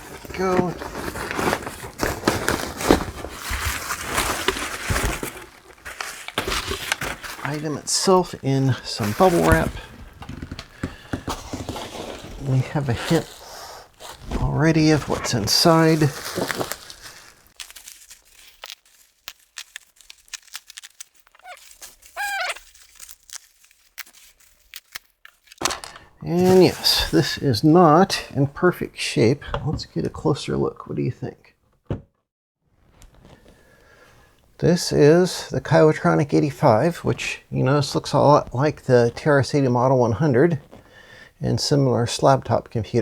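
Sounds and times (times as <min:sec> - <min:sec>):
plastic crackling and tearing: 0:00.0 - 0:25.8
packing material rustling: 0:00.0 - 0:27.4
tape squeaky screech: 0:21.4 - 0:22.6.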